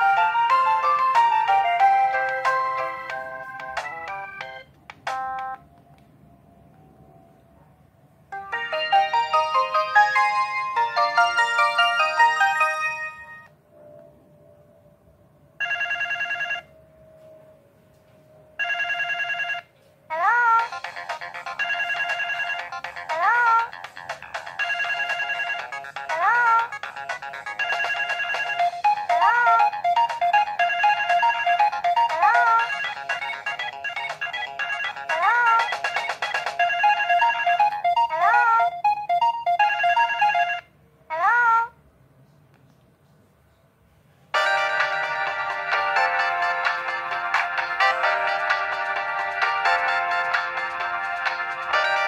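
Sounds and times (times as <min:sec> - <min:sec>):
synth ringtone melody: 0:00.0 - 0:05.7, 0:08.3 - 0:13.5, 0:15.6 - 0:16.7, 0:18.6 - 0:19.7, 0:20.6 - 0:40.7, 0:44.4 - 0:52.0.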